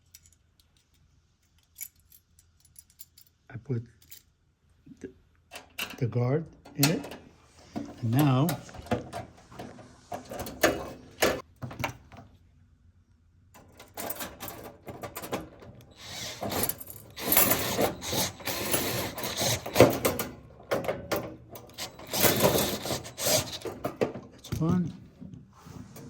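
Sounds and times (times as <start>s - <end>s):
metal hardware clattering: 5.5s - 12.2s, 13.6s - 24.8s
screwdriver fitting a screw: 15.9s - 20.1s, 21.7s - 23.7s.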